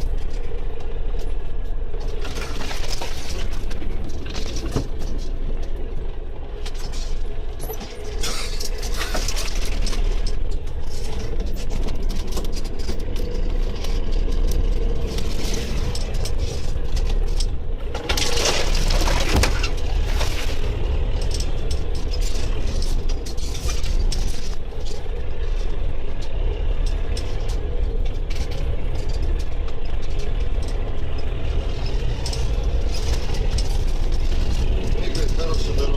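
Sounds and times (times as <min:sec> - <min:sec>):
heavy machine engine under load: 0:00.0 - 0:35.9
wood cracking and snapping: 0:07.9 - 0:35.1
tree breaking and falling: 0:17.9 - 0:24.6.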